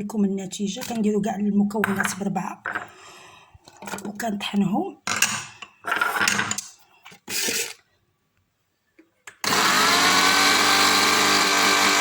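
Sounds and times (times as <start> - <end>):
electric blender motor grinding: 9.4 - 12.0.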